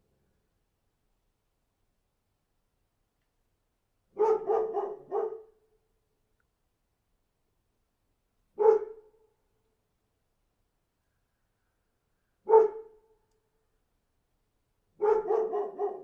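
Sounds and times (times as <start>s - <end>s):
dog barking: 4.2s - 5.6s, 8.6s - 9.2s, 12.4s - 13.0s, 15.0s - 16.0s.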